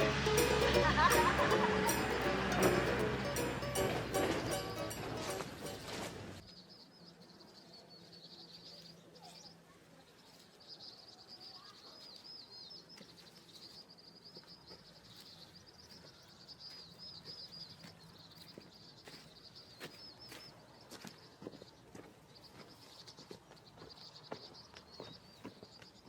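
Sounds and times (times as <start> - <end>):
small birds twittering: 0.0 - 26.0.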